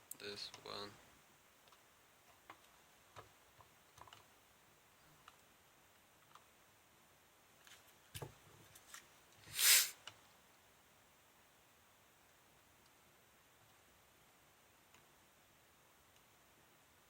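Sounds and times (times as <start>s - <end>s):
short hiss: 9.5s - 10.0s.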